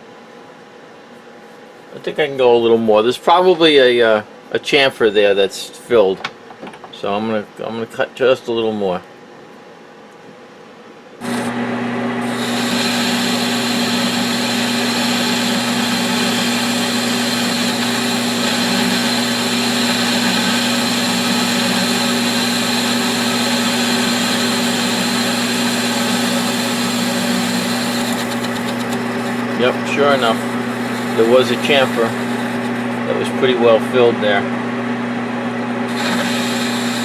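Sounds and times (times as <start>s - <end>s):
metal lathe motor hum: 11.2s - 33.4s, 34.4s - 37.0s.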